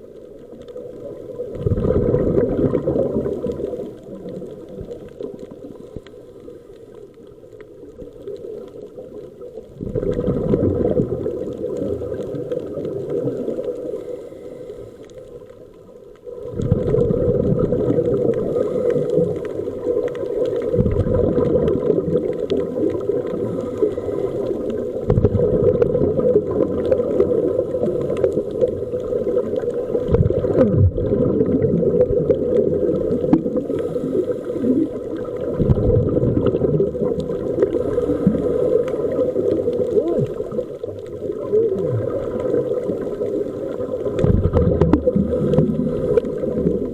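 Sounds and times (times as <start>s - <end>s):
underwater bubbling rumble: 0.0s - 46.9s
faint steady tones: 11.0s - 16.5s, 17.7s - 30.7s.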